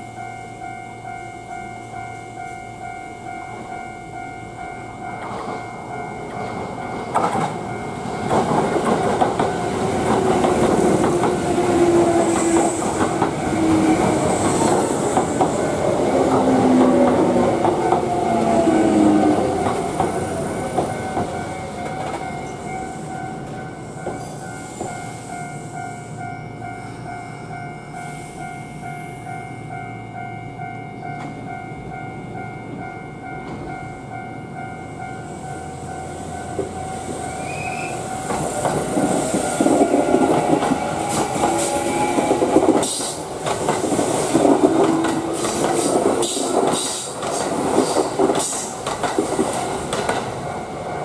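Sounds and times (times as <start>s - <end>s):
train rumble and wheel clatter: 0.0s - 51.0s.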